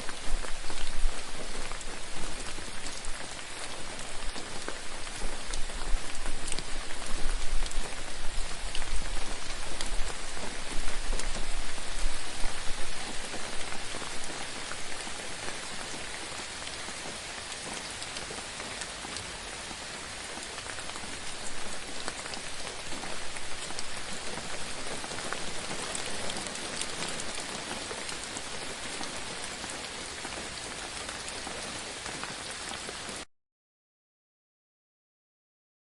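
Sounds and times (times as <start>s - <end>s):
stream water rushing: 0.0s - 32.1s.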